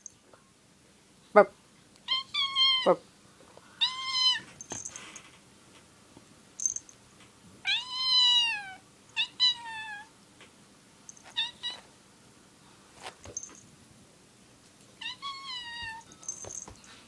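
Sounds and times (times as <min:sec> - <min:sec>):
cat meowing: 0:02.0 - 0:03.0, 0:03.8 - 0:04.5, 0:07.7 - 0:10.1, 0:15.0 - 0:16.1.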